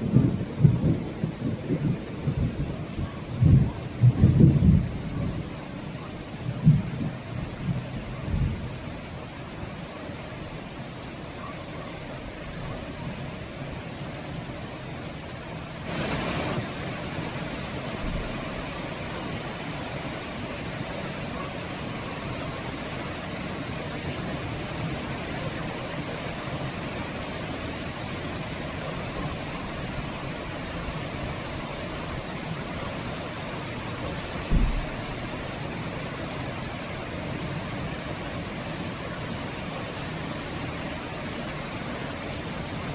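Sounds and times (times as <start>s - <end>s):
rain falling: 0.0s - 42.9s
short low thump: 34.5s - 35.2s.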